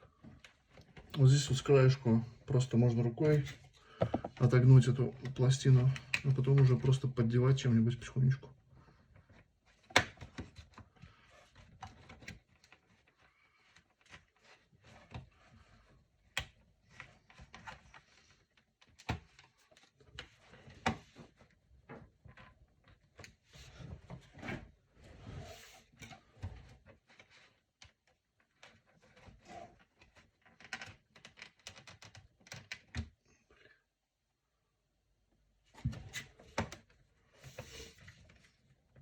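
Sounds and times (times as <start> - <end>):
plastic clicks and scraping: 3.4 - 6.8, 26.0 - 33.1.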